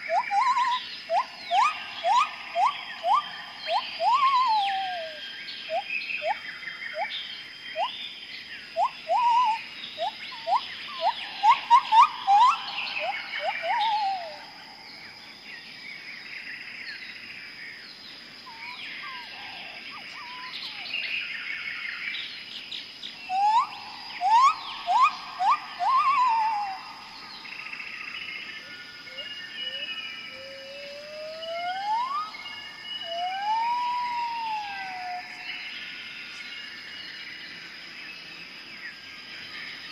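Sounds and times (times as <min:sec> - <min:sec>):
bird upward-sliding whistles: 0:00.0 - 0:06.4, 0:08.8 - 0:14.4, 0:23.3 - 0:26.8, 0:31.4 - 0:32.4
high bird chirps: 0:00.0 - 0:08.0, 0:08.8 - 0:14.4, 0:19.9 - 0:21.0, 0:23.2 - 0:27.8.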